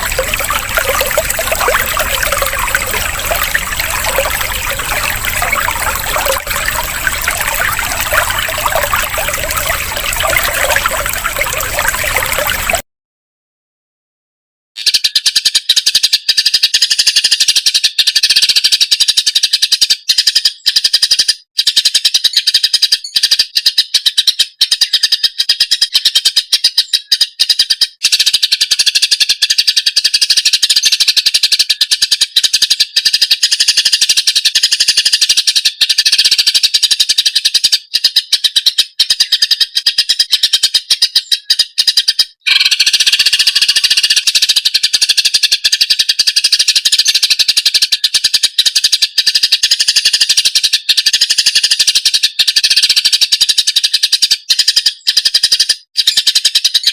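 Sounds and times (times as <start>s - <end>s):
bird singing rapid chattering song: 14.8s - 56.9s.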